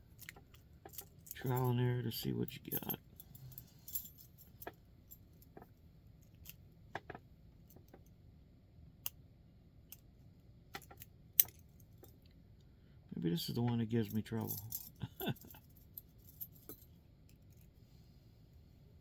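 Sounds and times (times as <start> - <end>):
keys jingling in a padlock: 0.0 - 6.6, 10.8 - 12.2, 14.0 - 17.7.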